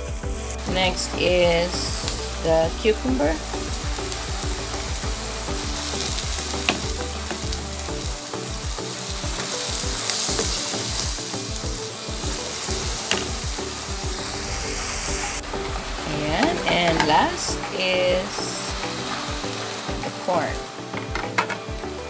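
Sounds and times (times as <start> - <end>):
vegetables sizzling in butter: 0.0 - 22.0.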